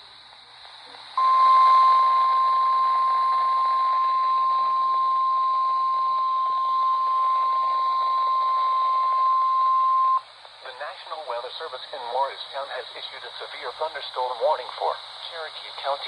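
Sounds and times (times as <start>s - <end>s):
radio hiss: 0.0s - 16.0s
high-pitched alarm tone: 1.2s - 10.2s.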